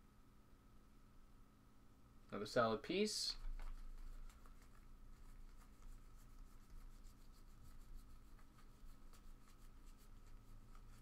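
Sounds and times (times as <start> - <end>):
faint electrical hum: 0.0 - 11.0
trading cards flipped by hand: 3.4 - 5.8.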